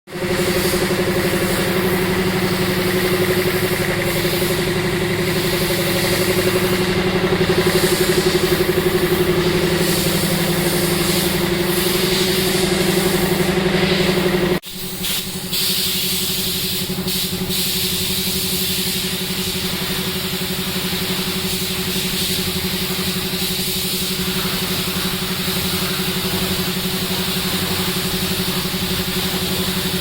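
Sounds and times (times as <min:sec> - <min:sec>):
machine motor hum: 0:00.1 - 0:14.6
hiss: 0:00.1 - 0:30.0.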